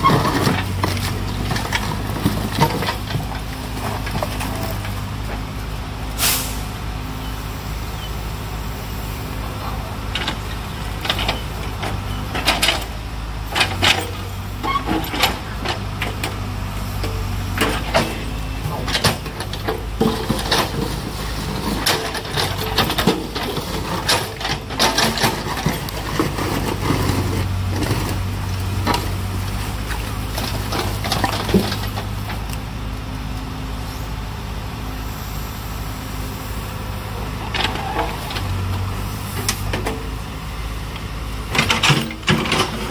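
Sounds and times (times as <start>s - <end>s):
rubbish knocking and clattering: 0.0s - 5.5s, 17.1s - 32.4s
diesel engine running: 0.0s - 42.9s.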